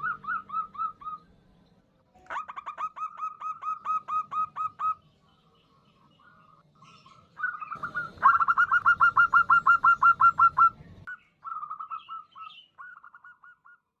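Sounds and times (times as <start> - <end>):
dove cooing: 0.0 - 1.2, 2.2 - 5.0, 7.4 - 10.8.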